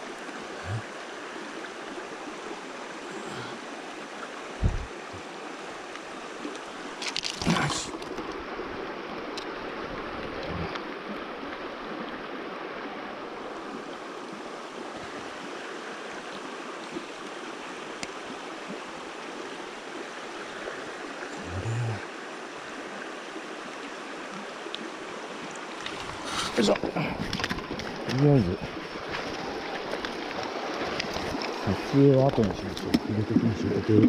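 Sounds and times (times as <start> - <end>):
stream water rushing: 0.0 - 34.0
sharp thump: 4.6 - 4.9.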